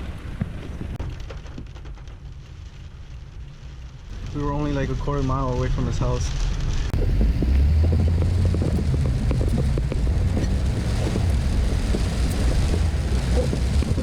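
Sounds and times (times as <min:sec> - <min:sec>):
car engine and tyres on wet road: 0:00.0 - 0:05.4, 0:06.4 - 0:14.0
small irregular ticks: 0:07.0 - 0:14.0.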